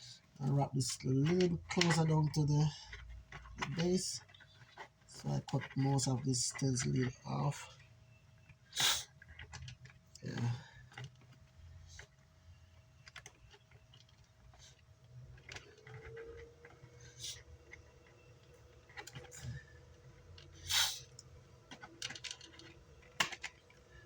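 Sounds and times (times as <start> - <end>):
small tools clicking and tapping: 0.2 - 24.0
short scrape: 20.6 - 21.1.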